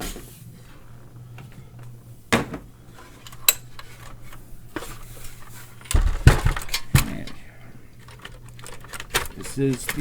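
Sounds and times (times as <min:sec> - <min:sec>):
low steady hum: 0:00.0 - 0:10.0
metal clunk: 0:05.8 - 0:07.4.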